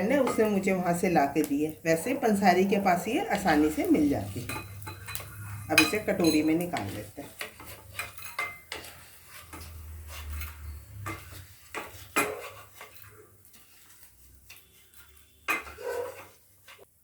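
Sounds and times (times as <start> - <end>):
spoon scraping and clinking on metal: 3.4 - 16.8.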